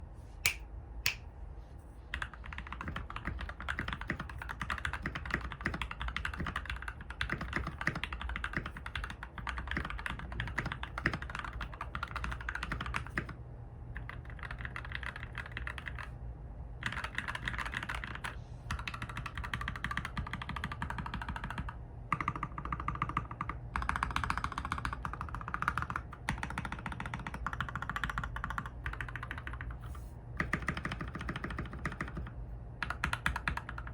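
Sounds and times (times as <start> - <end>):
mechanical keyboard typing: 2.1 - 13.4, 14.0 - 16.1, 16.8 - 29.8, 30.4 - 33.9.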